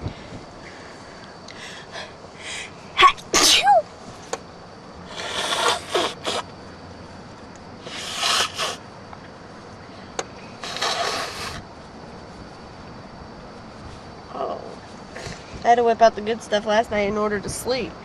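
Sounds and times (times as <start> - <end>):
breathy inhales: 0.0 - 2.8
woman sneezing: 3.3 - 3.8.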